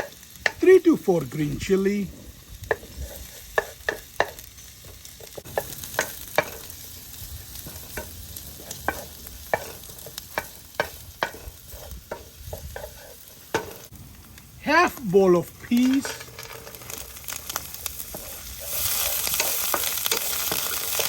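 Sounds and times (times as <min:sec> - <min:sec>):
food frying in oil: 0:00.0 - 0:21.0
spoon scraping and tapping pan: 0:02.7 - 0:06.7, 0:07.6 - 0:13.9.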